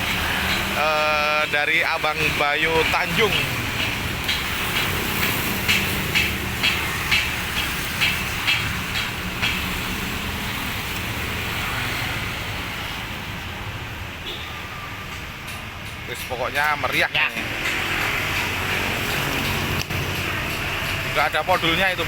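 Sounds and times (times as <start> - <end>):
heavy engine rumbling: 0.0 - 14.2
regular clicking: 1.5 - 10.3, 15.1 - 22.0.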